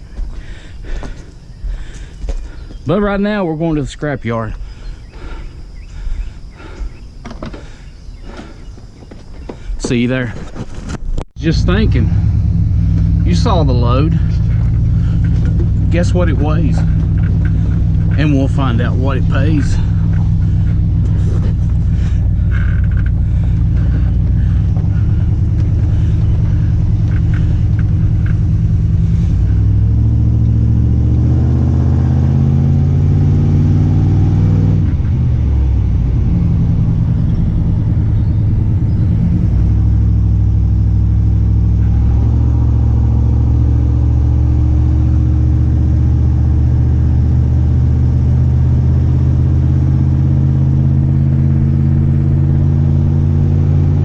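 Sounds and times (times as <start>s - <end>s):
truck engine running: 0.0s - 10.4s, 11.4s - 54.0s.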